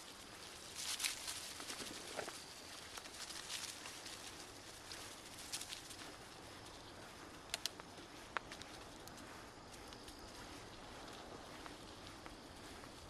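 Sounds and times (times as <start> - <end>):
bicycle tyre hiss on gravel: 0.0 - 7.4.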